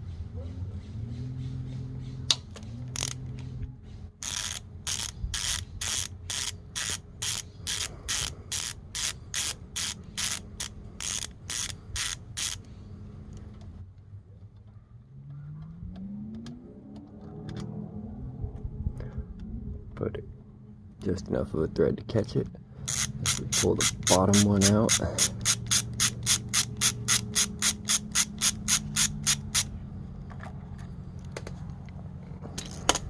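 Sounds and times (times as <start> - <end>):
socket ratchet clicking: 2.3 - 3.2, 4.2 - 12.7, 22.8 - 29.7.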